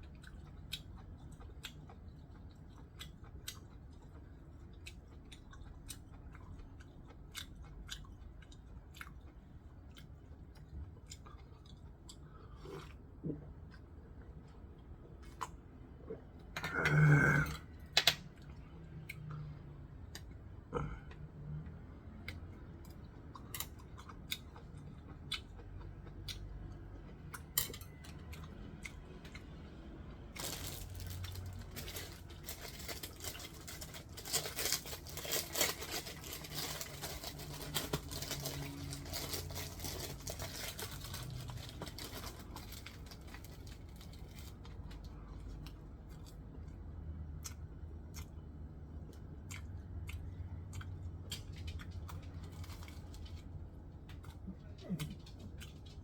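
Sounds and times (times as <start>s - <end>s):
crinkling and tearing: 30.4s - 44.8s.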